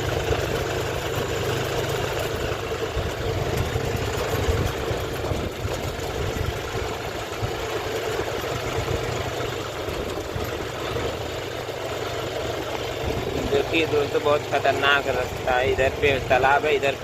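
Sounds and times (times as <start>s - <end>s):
diesel engine running: 0.0s - 17.0s.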